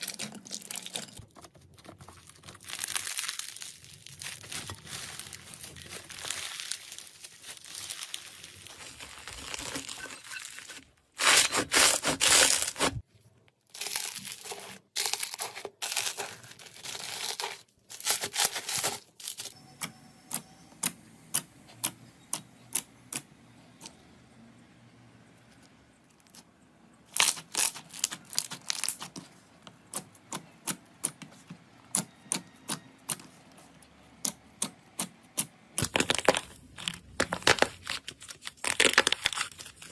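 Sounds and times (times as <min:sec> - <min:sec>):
slime crackling and crunching: 0:00.0 - 0:13.0, 0:13.6 - 0:19.5, 0:27.1 - 0:29.2, 0:35.8 - 0:39.9.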